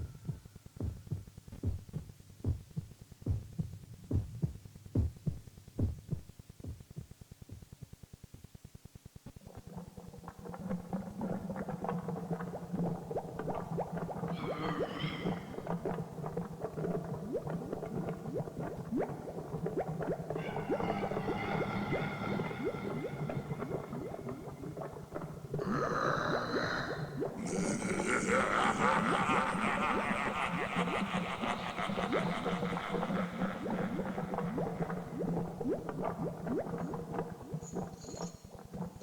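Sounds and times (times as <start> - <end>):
low hum: 19.8 - 25.7
wailing high tones: 20.4 - 23.9.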